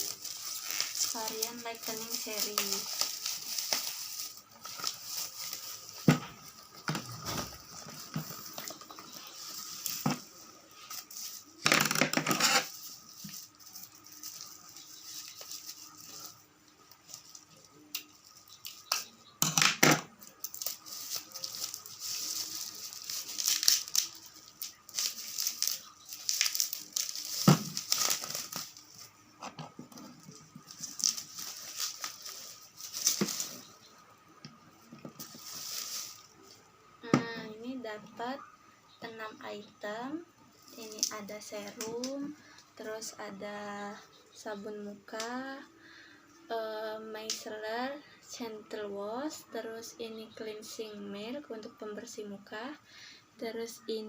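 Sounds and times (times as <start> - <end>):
plastic ripping: 0.0 - 16.4, 17.0 - 33.8, 35.1 - 36.4
plastic packaging crinkling: 0.0 - 19.2, 20.1 - 36.6, 40.6 - 42.3.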